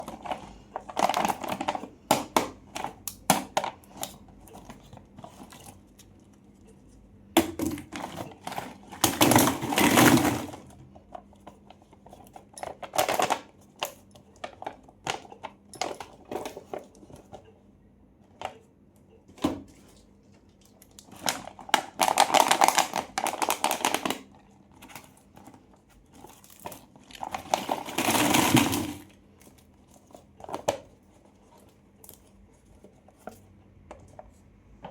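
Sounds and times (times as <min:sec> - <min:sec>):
candy wrappers crinkling: 0:00.0 - 0:06.8, 0:07.9 - 0:17.1, 0:20.0 - 0:32.4
wrappers tearing: 0:21.0 - 0:24.3.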